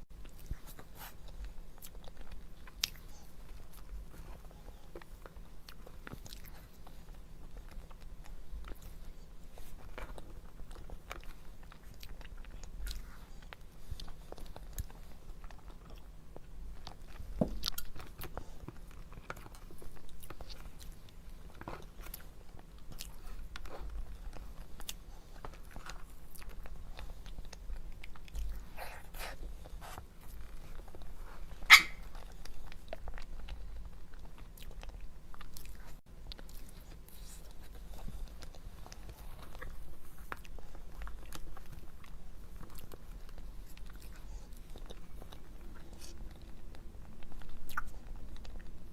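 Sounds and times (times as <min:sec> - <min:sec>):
person biting and chewing: 0:47.2 - 0:48.7.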